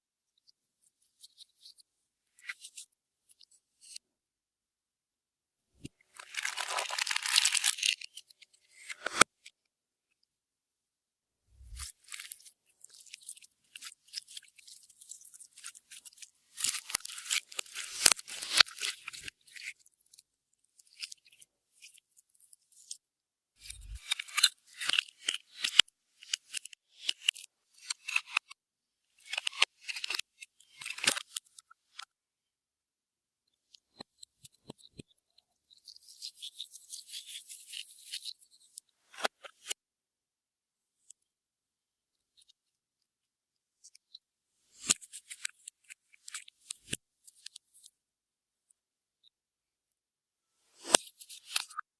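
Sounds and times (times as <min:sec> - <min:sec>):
crunchy handling noises: 0:06.1 - 0:08.0, 0:23.6 - 0:24.4.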